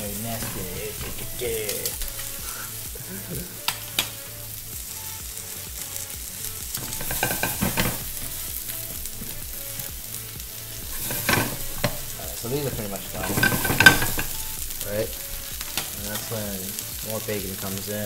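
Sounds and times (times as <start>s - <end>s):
stirring clatter: 0.0s - 2.5s, 6.7s - 16.4s
vegetables sizzling in a frying pan: 0.0s - 18.0s
utensil knocking against pan: 6.7s - 9.9s, 10.9s - 16.0s.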